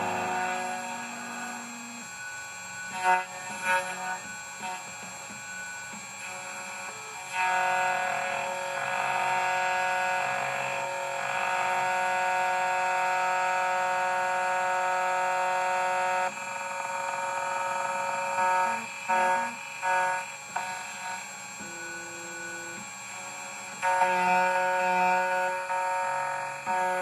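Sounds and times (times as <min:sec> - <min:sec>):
short machine whirring: 0:00.0 - 0:02.9
key cutting machine whine: 0:00.0 - 0:27.0.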